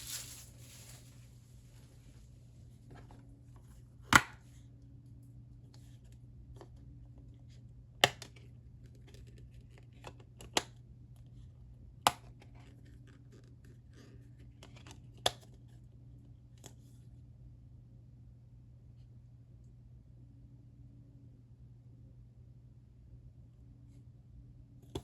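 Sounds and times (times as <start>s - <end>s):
light rustling: 0.0s - 2.3s
steady low hum: 0.0s - 8.0s.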